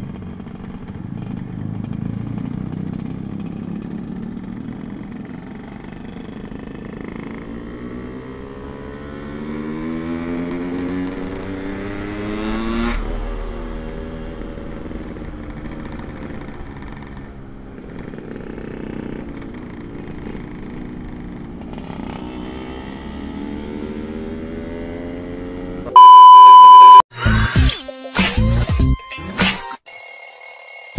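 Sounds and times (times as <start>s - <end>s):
two-stroke motorcycle engine revving: 0.0s - 26.0s
loud high beep: 25.9s - 27.0s.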